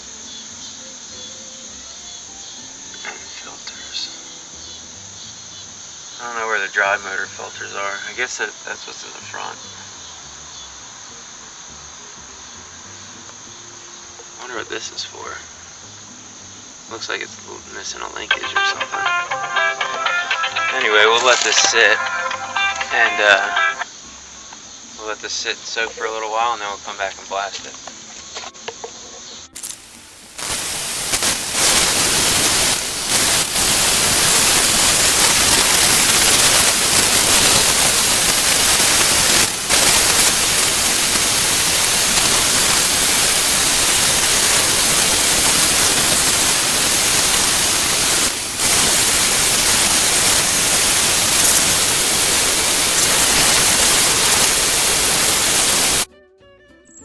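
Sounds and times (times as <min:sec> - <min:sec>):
pressure washer spraying: 0:29.6 - 0:56.1.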